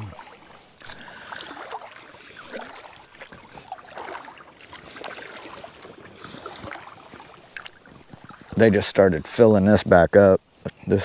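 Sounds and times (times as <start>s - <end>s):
water dripping: 0.0s - 8.6s
paddle splashing in water: 0.0s - 8.8s.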